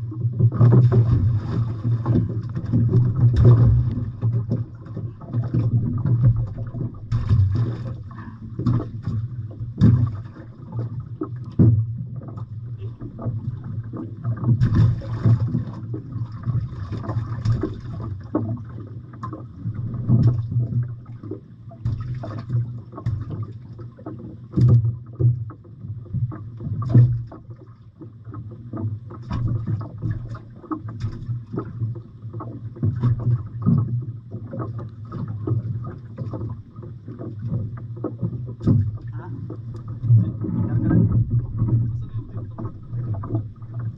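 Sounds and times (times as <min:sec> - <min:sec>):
boat engine drone: 0:00.0 - 0:15.0, 0:31.6 - 0:43.9
water knocks and splashes: 0:00.0 - 0:43.9.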